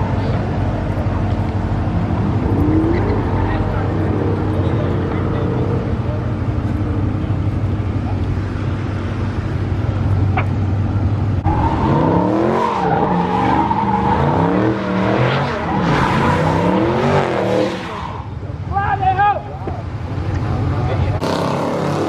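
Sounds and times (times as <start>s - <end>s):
car engine revving: 0.0s - 8.8s, 11.4s - 18.3s, 21.0s - 22.0s.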